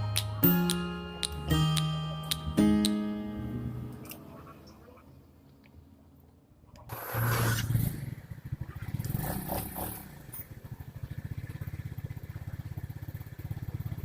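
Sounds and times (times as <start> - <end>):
scooter engine starting and idling: 6.9 - 14.0.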